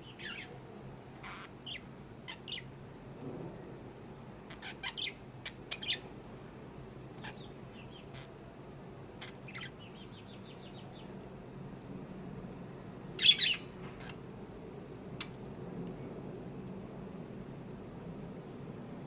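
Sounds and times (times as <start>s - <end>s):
lovebirds chirping: 0.0s - 0.6s, 1.2s - 2.7s, 4.5s - 6.1s, 7.2s - 8.4s, 9.2s - 11.2s, 13.2s - 14.2s
low background hum: 0.0s - 19.0s.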